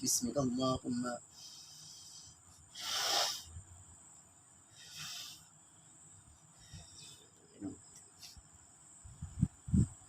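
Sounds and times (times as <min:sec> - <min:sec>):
person blowing air: 0:01.4 - 0:03.6, 0:04.8 - 0:05.5.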